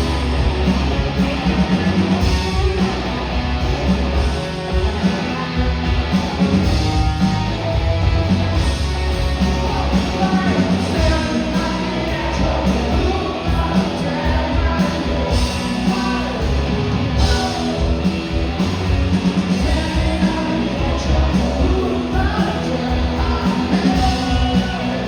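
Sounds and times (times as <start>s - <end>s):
rock band playing live: 0.0s - 25.0s
person singing: 9.6s - 18.1s.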